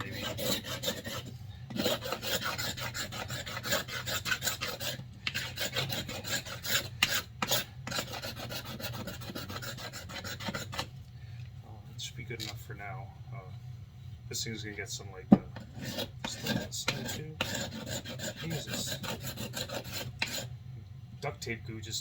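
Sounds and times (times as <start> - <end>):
knife scraping wood: 0.0 - 10.9, 15.6 - 20.5.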